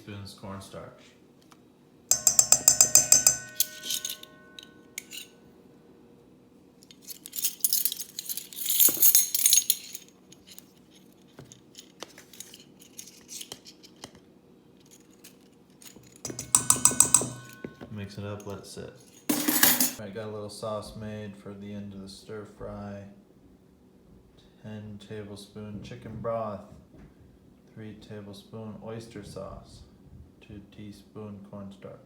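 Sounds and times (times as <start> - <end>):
spoon clinking against bowl: 2.1 - 5.3, 16.2 - 18.6, 19.2 - 20.0
spoon scraping bowl: 2.1 - 5.3, 16.2 - 17.9.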